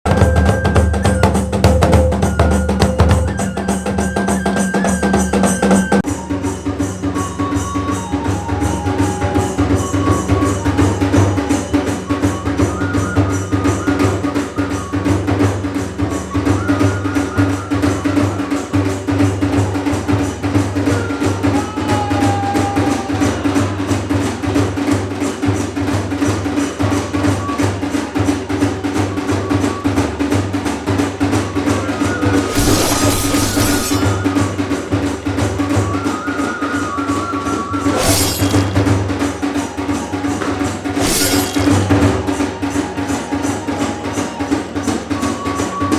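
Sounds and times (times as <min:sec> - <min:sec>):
rapid drumming: 0:00.0 - 0:45.9
high wavering melody: 0:00.1 - 0:19.0, 0:31.3 - 0:35.2, 0:35.8 - 0:45.0.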